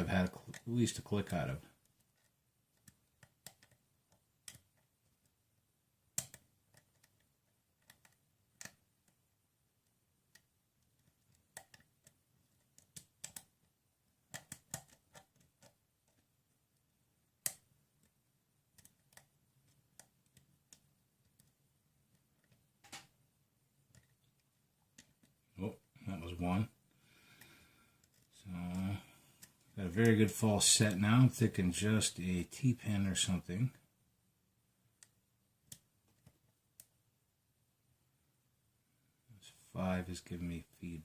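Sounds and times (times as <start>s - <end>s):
lock pick clicking and scraping: 1.8s - 5.3s, 6.2s - 9.2s, 10.3s - 13.6s, 14.2s - 16.3s.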